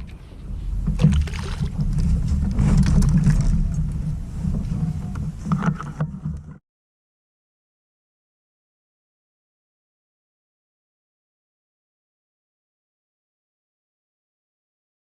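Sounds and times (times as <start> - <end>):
water splashing: 0.0 - 4.6
steady low rumble: 0.0 - 6.6.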